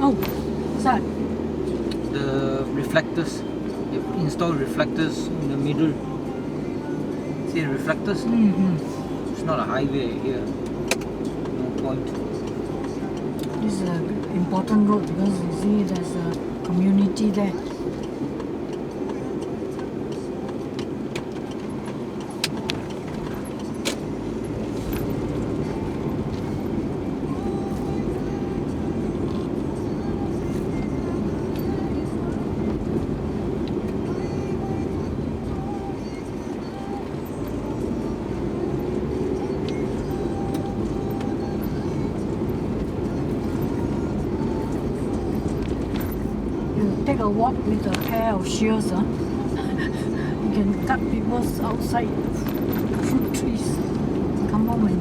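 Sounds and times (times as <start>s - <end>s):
vehicle road noise: 0.0s - 55.0s
sharp clicks: 10.8s - 11.6s.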